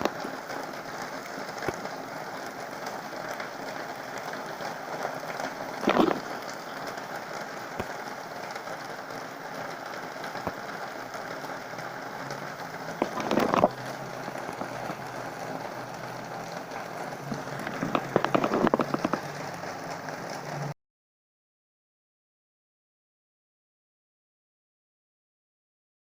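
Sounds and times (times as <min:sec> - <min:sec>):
heavy rain falling: 0:00.0 - 0:20.8.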